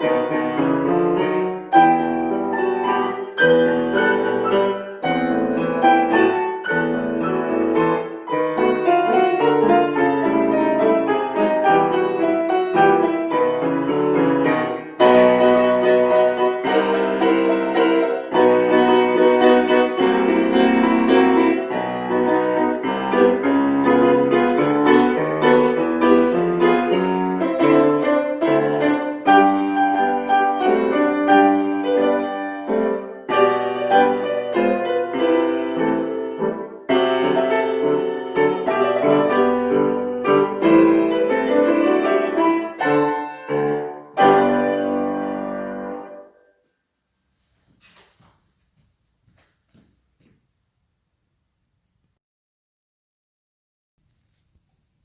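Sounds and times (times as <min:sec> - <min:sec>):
classical piano piece: 0:00.0 - 0:46.6.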